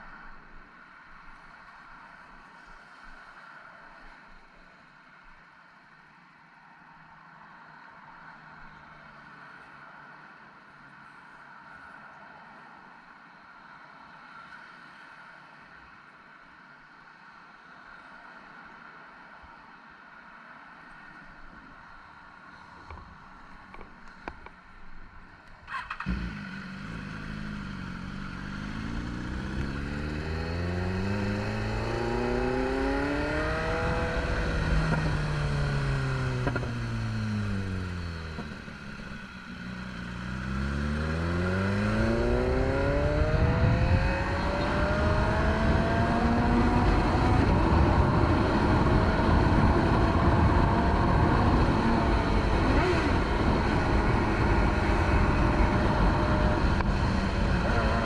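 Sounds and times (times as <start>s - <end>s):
motorcycle engine revving: 25.7s - 58.0s.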